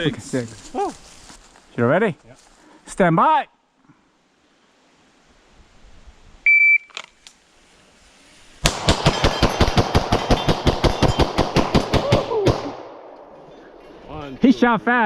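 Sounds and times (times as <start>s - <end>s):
rapid pistol shots: 8.6s - 12.9s.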